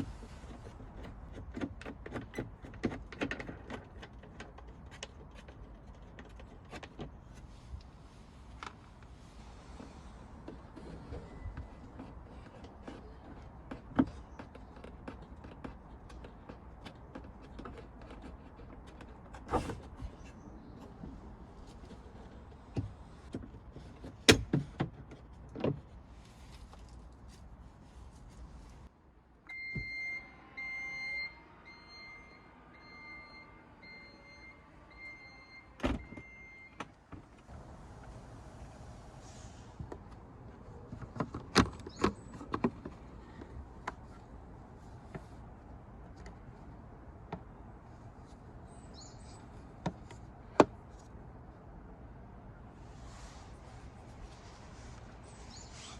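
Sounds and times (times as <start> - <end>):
tools tapping on car trim: 11.5 - 19.5.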